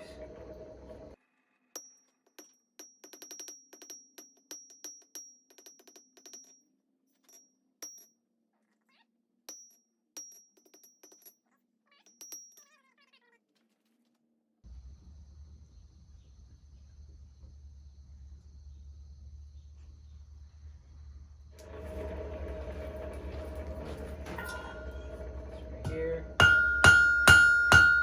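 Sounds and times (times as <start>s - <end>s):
hammer ringing on anvil: 23.5s - 28.0s.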